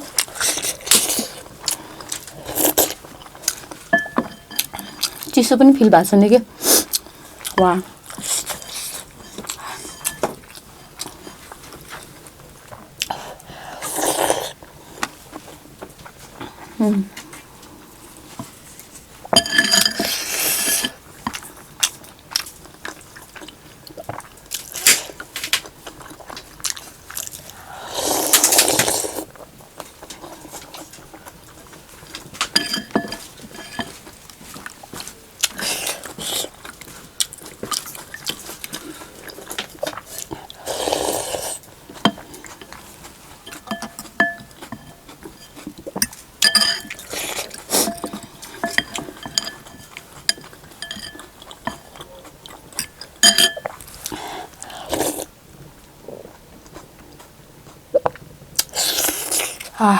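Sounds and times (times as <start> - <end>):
slurping noodle soup: 0.2 - 3.0, 13.1 - 14.6, 19.8 - 21.0, 27.4 - 29.4, 37.8 - 43.0, 53.8 - 55.3, 58.6 - 59.8
spoon clinking against bowl: 3.9 - 5.0, 19.4 - 21.0, 32.6 - 34.0, 43.5 - 47.1, 47.8 - 52.0, 52.8 - 53.8.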